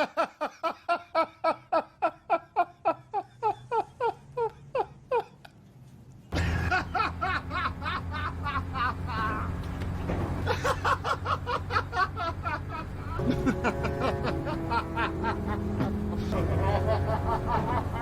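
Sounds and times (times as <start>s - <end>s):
snickering: 0.0s - 5.6s, 6.4s - 9.5s
hearty laughter: 0.0s - 5.7s, 6.3s - 9.6s, 10.4s - 18.0s.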